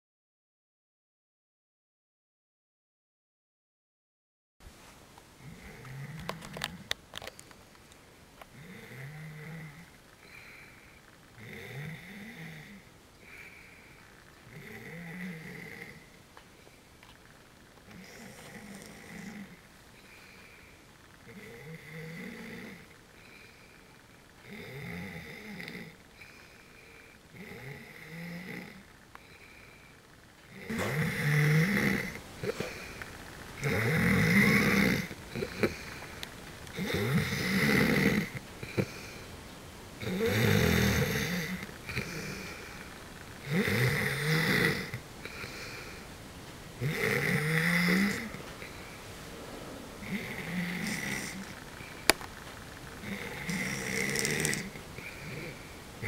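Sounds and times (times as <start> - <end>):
person snoring: 5.4 - 6.9, 8.5 - 16.2, 17.9 - 39.3, 40.0 - 46.1, 46.8 - 52.2, 53.0 - 55.8.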